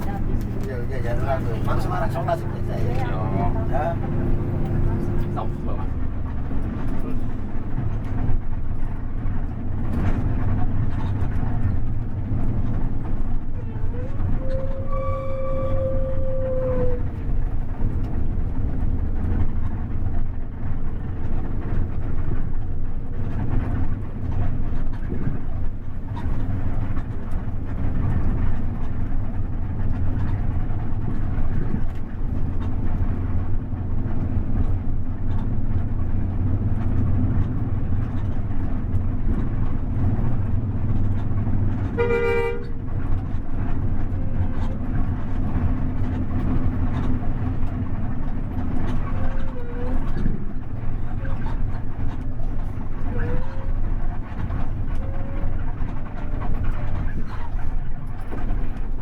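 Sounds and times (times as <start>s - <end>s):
bus engine and road drone: 0.0s - 59.0s
bus horn toot: 13.6s - 17.0s, 41.8s - 43.1s.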